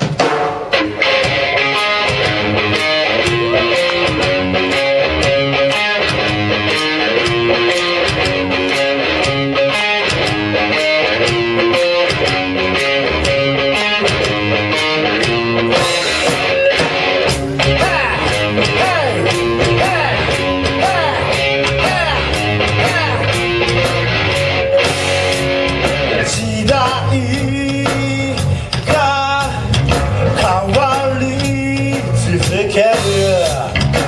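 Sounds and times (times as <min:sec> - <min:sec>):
electric guitar: 0:00.0 - 0:34.0
live rock band playing: 0:00.0 - 0:34.0.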